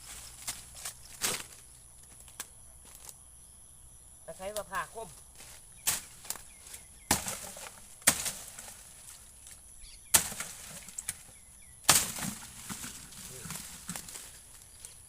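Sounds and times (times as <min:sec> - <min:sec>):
blade chopping into wood: 0:07.1 - 0:08.8, 0:10.1 - 0:11.3, 0:11.9 - 0:14.2.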